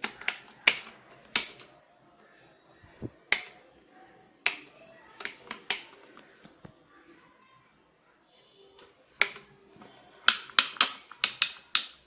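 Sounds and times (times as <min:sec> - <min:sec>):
hard objects clicking and knocking: 0:00.0 - 0:01.8, 0:04.4 - 0:06.8, 0:08.8 - 0:09.5, 0:10.2 - 0:12.0.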